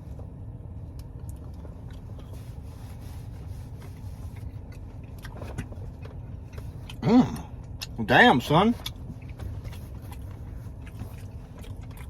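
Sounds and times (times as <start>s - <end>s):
steady low rumble: 0.0s - 12.0s
wet chewing clicks: 8.8s - 12.0s.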